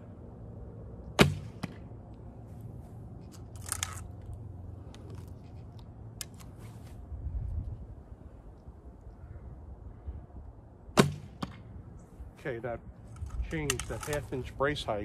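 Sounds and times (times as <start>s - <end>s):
brief rustle: 13.1s - 14.4s.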